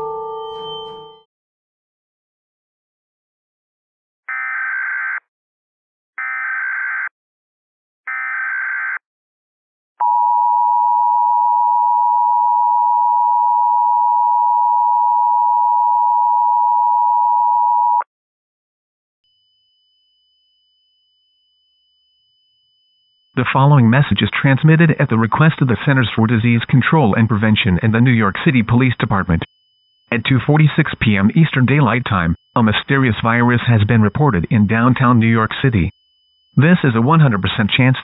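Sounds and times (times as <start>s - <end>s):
digital data tone bursts: 19.3s - 38.0s
steady loud two-tone attention signal: 19.3s - 38.0s.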